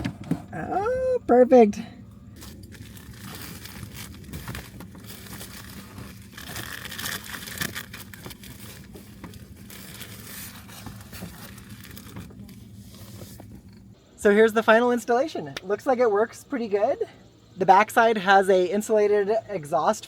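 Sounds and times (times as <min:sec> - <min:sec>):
faint low hum: 0:00.0 - 0:20.0
rustling crinkling handling noise: 0:02.3 - 0:13.9.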